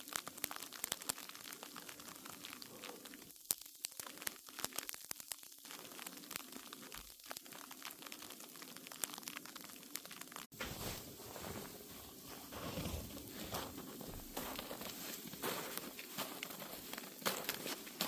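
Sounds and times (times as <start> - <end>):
sleet ticking on icy crust: 0.0 - 18.0.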